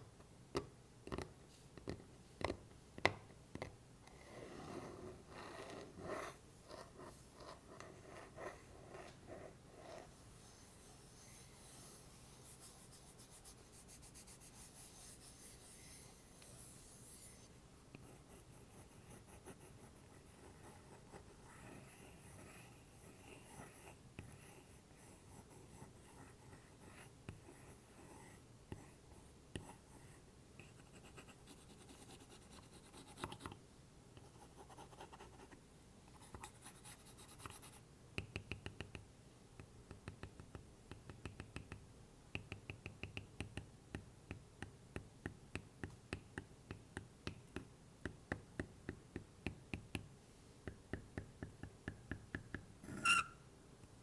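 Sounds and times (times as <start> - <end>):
stylus tapping on wood: 42.4 - 52.7.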